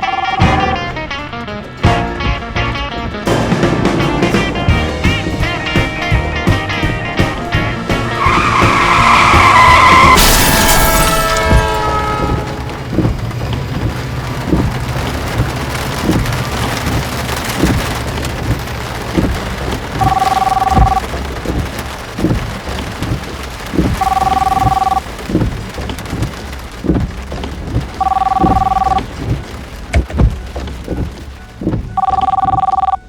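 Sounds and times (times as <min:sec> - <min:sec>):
two-tone ring: 0:00.0 - 0:00.8, 0:20.0 - 0:21.0, 0:24.0 - 0:25.0, 0:28.0 - 0:29.0, 0:32.0 - 0:33.0
car tyres screeching: 0:00.0 - 0:33.0
music: 0:00.2 - 0:10.2
thuds: 0:00.4 - 0:24.0, 0:24.6 - 0:32.6
loud crash: 0:07.2 - 0:13.4.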